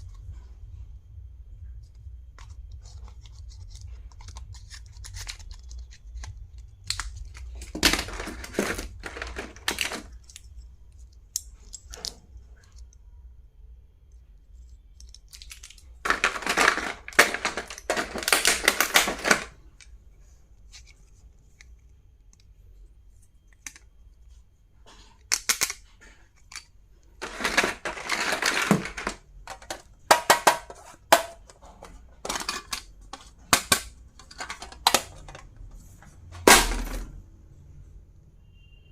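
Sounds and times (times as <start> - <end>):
packaging rustling: 2.4 - 10.3, 15.4 - 19.8, 27.2 - 35.4.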